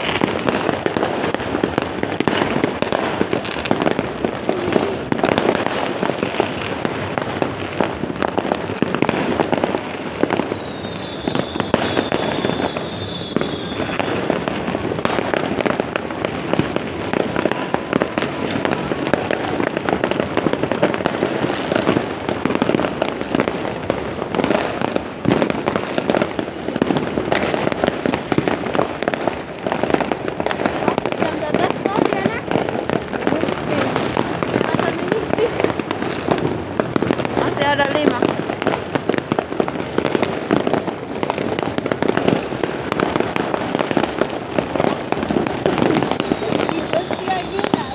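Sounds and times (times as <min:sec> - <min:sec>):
fireworks and firecrackers banging: 0:00.0 - 0:47.9
whistling rocket: 0:10.3 - 0:14.3, 0:45.8 - 0:47.9.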